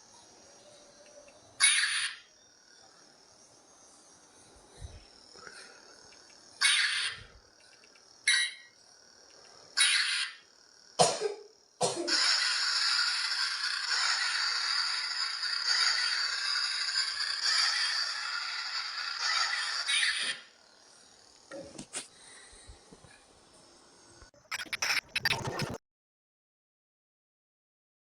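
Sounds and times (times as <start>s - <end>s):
toy lightsaber buzzing hum: 3.4s - 11.0s, 12.0s - 21.5s.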